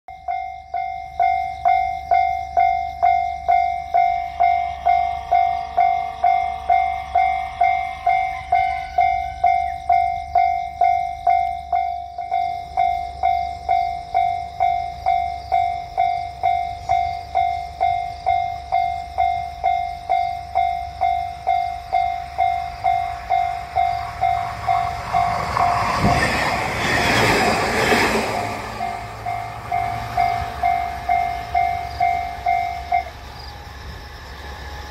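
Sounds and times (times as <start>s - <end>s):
level crossing alarm dinging: 0.1s - 34.9s
train wheels on rails: 0.2s - 34.9s
rooster crowing: 4.2s - 10.1s.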